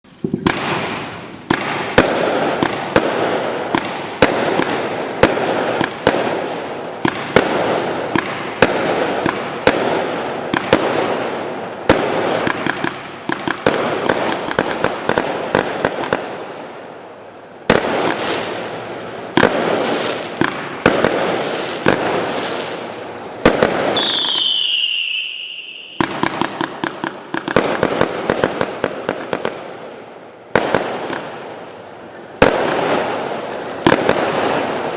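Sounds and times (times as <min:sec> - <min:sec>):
continuous firework hiss: 0:00.0 - 0:34.9
firework launches and bursts: 0:00.1 - 0:34.9
falling firework whistle: 0:17.6 - 0:29.5.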